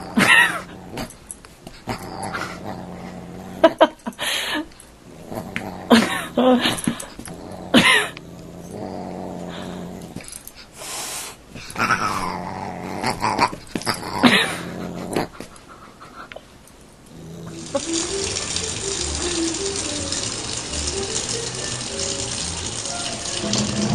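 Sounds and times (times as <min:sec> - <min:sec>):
dog growling: 0:00.0 - 0:04.0, 0:05.0 - 0:10.4, 0:11.6 - 0:15.7, 0:17.1 - 0:23.9
music: 0:17.6 - 0:23.9.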